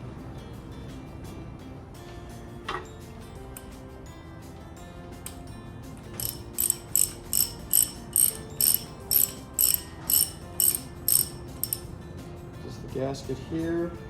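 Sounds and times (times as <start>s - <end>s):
ratchet wrench clicking: 6.2s - 11.9s.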